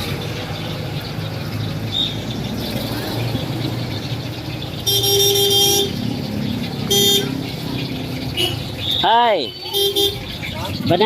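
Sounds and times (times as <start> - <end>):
road traffic hum: 0.0 - 11.0.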